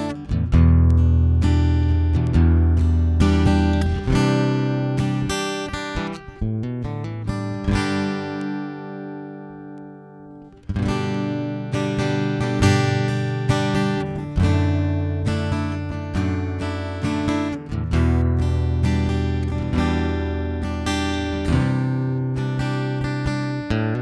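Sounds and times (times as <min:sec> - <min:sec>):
acoustic guitar strumming: 0:00.0 - 0:24.0.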